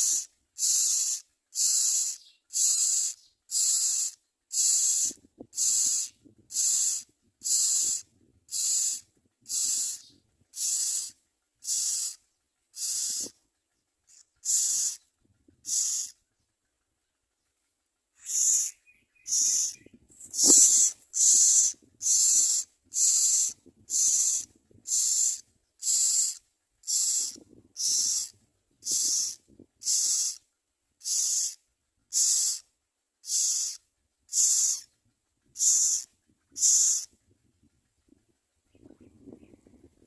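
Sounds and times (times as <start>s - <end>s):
nestlings' harsh begging calls: 0.0s - 12.2s, 12.8s - 13.4s, 14.1s - 15.0s, 15.6s - 16.2s, 18.2s - 30.4s, 31.0s - 32.6s, 33.2s - 34.9s, 35.6s - 37.2s.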